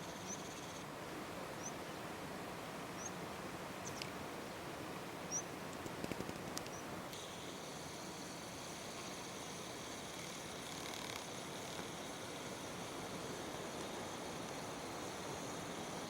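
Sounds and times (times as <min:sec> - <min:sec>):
faint high buzz: 0:00.0 - 0:02.1, 0:06.6 - 0:16.0
steady hiss: 0:00.0 - 0:16.0
faint clicks: 0:03.8 - 0:04.2, 0:05.7 - 0:07.2.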